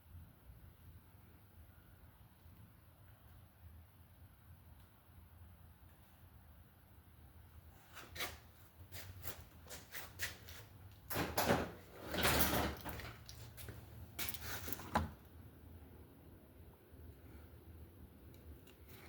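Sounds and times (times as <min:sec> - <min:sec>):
scraping rustles: 0:07.7 - 0:15.2.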